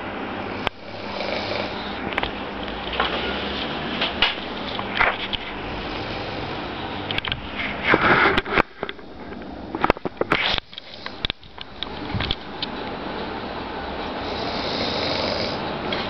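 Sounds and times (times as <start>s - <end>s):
person snoring: 0.8s - 2.0s, 14.2s - 15.6s
loud noisy breath: 14.2s - 15.7s.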